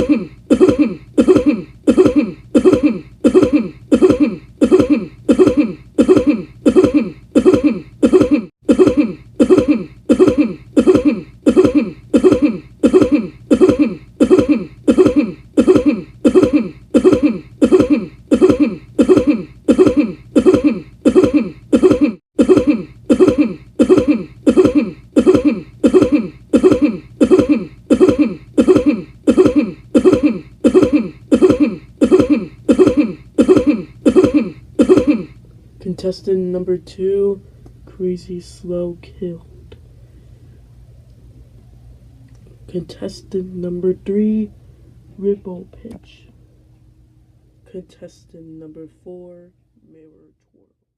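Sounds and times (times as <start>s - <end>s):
person coughing: 0.0s - 35.4s.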